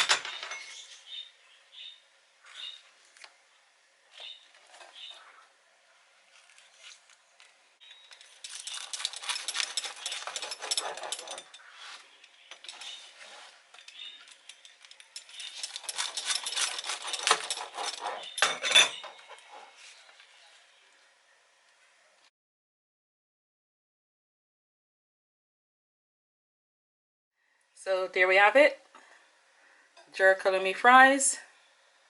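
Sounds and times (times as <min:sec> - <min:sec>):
knife cutting crisp tortilla: 0:08.5 - 0:12.1.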